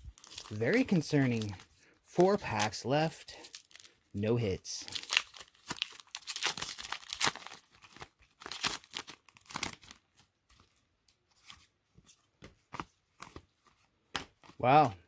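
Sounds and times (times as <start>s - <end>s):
wrapper tearing and crinkling: 0.0s - 1.6s, 3.4s - 4.0s, 4.8s - 10.2s.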